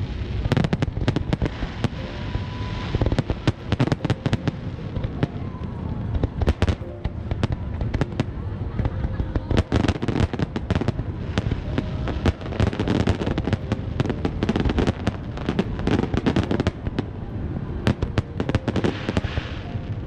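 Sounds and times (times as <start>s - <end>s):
fireworks cracking and popping: 0.0s - 5.4s, 6.1s - 17.2s, 17.8s - 20.0s.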